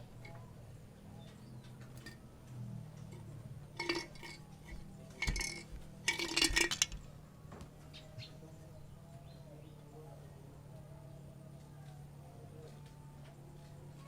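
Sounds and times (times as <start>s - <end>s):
hard objects clinking and rattling: 1.9s - 2.3s, 3.0s - 7.1s.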